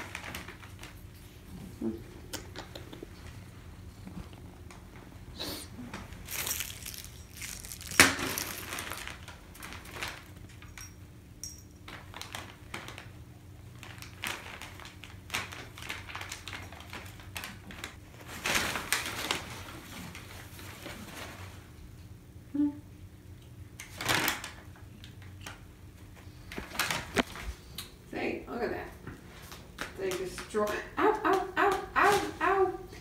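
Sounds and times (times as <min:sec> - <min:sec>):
faint steady hum: 0:00.0 - 0:33.0
rustling: 0:05.7 - 0:10.4.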